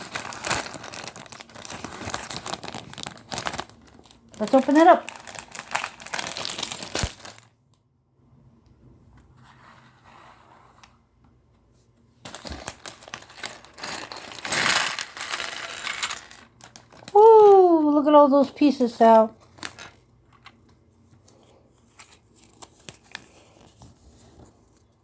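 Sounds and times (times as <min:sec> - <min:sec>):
plastic bag crinkling: 0:00.0 - 0:07.5, 0:12.2 - 0:18.2, 0:18.8 - 0:20.4
plastic pieces clattering: 0:00.0 - 0:07.5, 0:12.2 - 0:17.7, 0:19.1 - 0:20.1.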